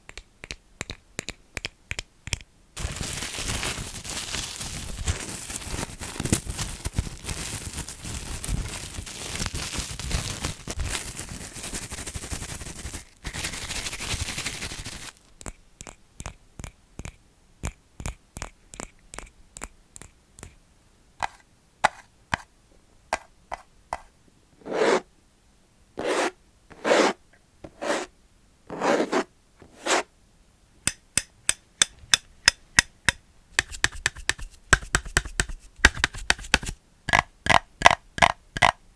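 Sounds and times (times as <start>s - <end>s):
close-up scratching and scraping: 24.6s - 25.0s, 26.0s - 28.1s, 28.7s - 30.1s
rubbing strokes: 24.6s - 25.0s, 26.0s - 28.1s, 28.7s - 30.1s.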